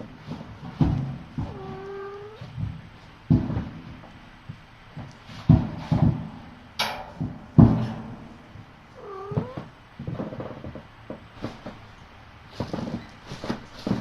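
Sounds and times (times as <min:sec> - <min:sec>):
dull thumps: 0:00.0 - 0:11.8
rustling: 0:00.0 - 0:14.0
kitten mewing: 0:09.0 - 0:09.7.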